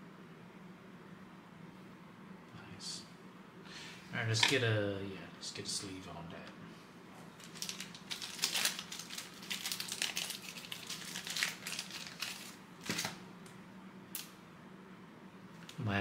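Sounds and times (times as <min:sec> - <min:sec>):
plastic sleeve crinkling: 0:07.4 - 0:13.2.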